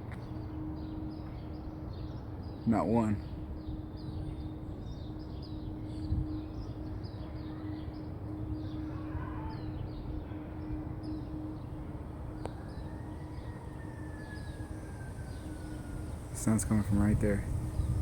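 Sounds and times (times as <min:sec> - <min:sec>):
faint wailing tone: 0:00.0 - 0:18.0
steady low hum: 0:00.0 - 0:18.0
small birds chirping: 0:00.8 - 0:18.0
low rumble: 0:09.5 - 0:18.0.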